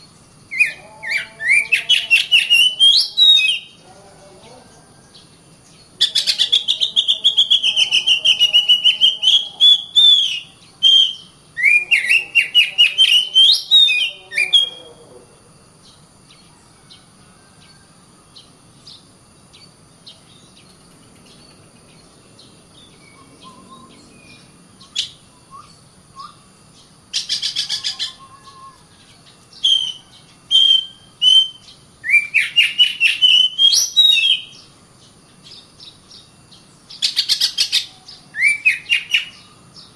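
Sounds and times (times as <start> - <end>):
bird singing trilling phrases: 0.0 - 39.9.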